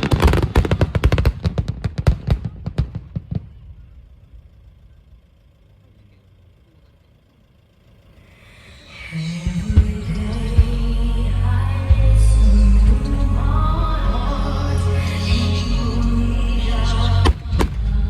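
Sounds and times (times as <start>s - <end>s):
fireworks cracks and bangs: 0.0s - 3.9s, 17.2s - 18.0s
music: 9.0s - 18.0s.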